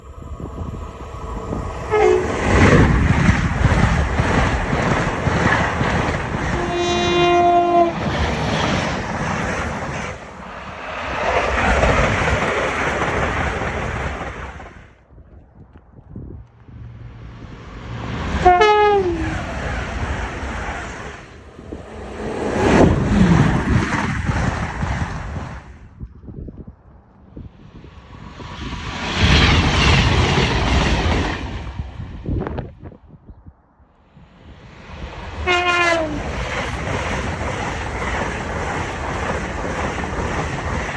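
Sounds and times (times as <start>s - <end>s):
high-speed train rushing past: 0.0s - 15.0s, 16.6s - 25.9s, 27.4s - 32.9s, 34.1s - 40.9s
train horn blast: 1.8s - 2.9s, 6.4s - 8.3s, 16.7s - 20.3s, 35.4s - 36.4s.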